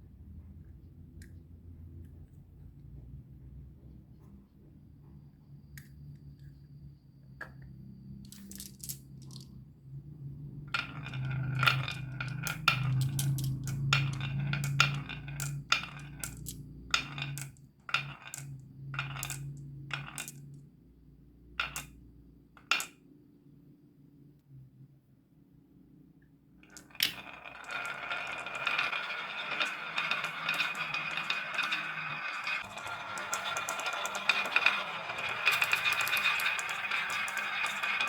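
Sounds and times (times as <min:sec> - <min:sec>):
marbles rolling on wooden track: 0:08.1 - 0:09.6, 0:10.5 - 0:20.6, 0:21.5 - 0:22.0, 0:22.6 - 0:23.0, 0:26.6 - 0:38.0
marbles clacking on track: 0:08.2 - 0:09.6, 0:10.8 - 0:20.6, 0:21.6 - 0:22.0, 0:22.6 - 0:23.0, 0:26.7 - 0:38.0.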